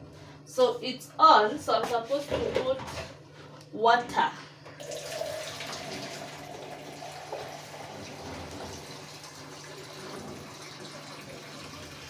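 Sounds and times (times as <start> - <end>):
water pouring into reservoir: 4.8 - 12.0.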